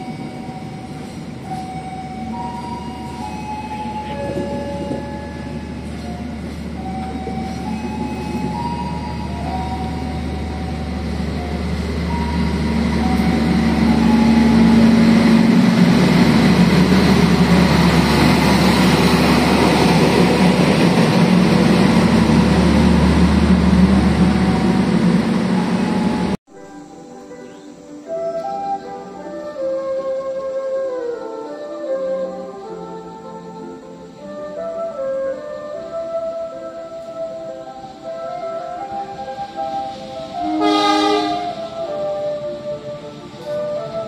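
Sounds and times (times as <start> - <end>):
diesel locomotive engine running: 0.0 - 26.4
train wheels rolling on rails: 0.0 - 26.4, 34.3 - 44.0.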